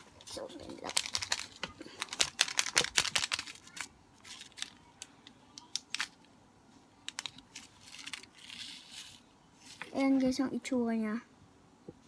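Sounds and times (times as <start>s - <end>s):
plastic package crackling and clicking: 0.2s - 6.3s, 7.0s - 9.1s.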